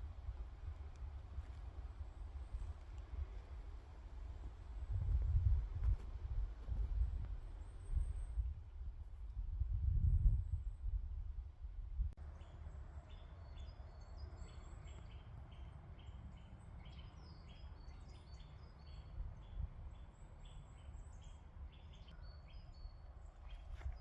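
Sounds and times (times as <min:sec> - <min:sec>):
small birds chirping: 0:12.2 - 0:24.0.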